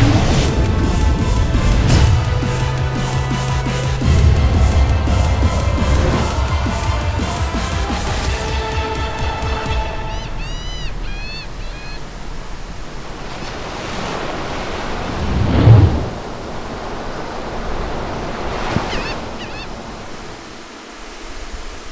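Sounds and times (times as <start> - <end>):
ocean surf washing: 0.0 - 21.9
bird chirping: 9.9 - 12.4.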